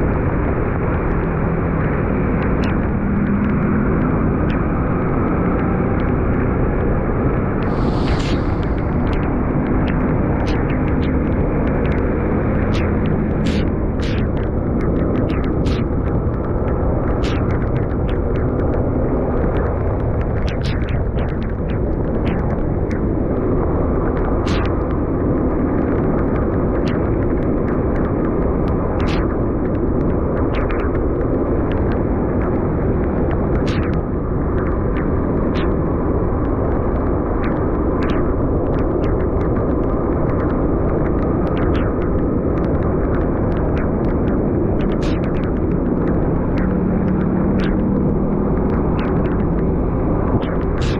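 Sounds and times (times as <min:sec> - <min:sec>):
vehicle rumble: 0:00.1 - 0:26.6
raindrop ticks: 0:08.3 - 0:50.9.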